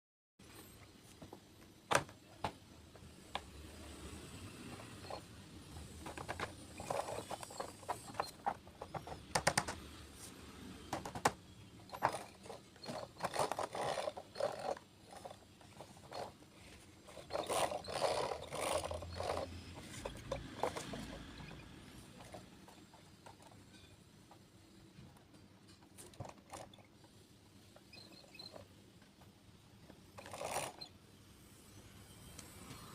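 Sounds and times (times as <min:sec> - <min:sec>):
plastic toy scraping: 0:03.9 - 0:23.9, 0:30.2 - 0:30.9
plastic toy clicks and knocks: 0:04.8 - 0:09.9, 0:10.9 - 0:16.4, 0:17.1 - 0:21.6, 0:29.9 - 0:30.9.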